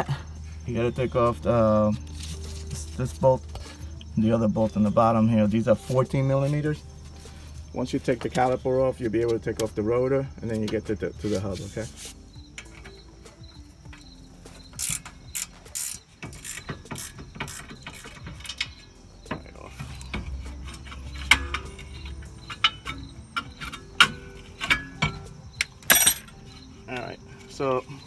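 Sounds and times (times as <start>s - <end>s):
ratchet wrench clicking: 13.9s - 26.4s
sharp metal clinks: 25.0s - 26.4s.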